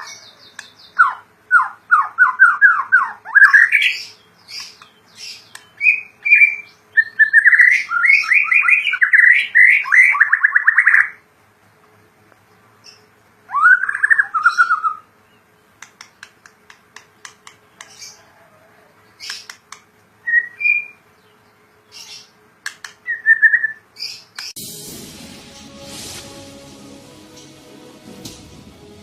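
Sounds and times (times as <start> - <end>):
bird singing whistled phrases: 5.8 - 11.1, 20.3 - 21.0, 23.1 - 23.8
music: 24.6 - 29.0.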